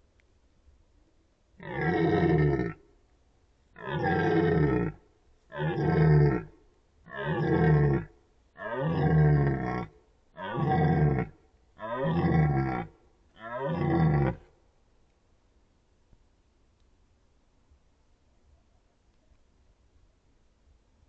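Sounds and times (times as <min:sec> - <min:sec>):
deer roaring: 0:01.6 - 0:02.8, 0:03.8 - 0:14.5.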